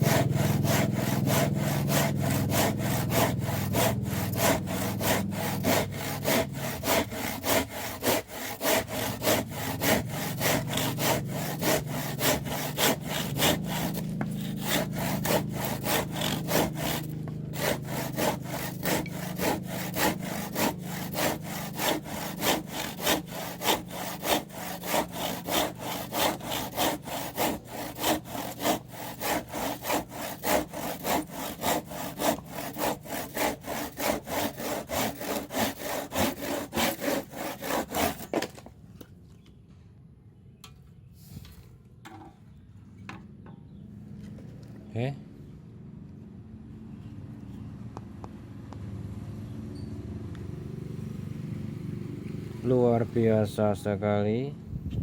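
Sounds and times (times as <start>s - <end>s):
hand saw cutting wood: 0.0s - 38.7s.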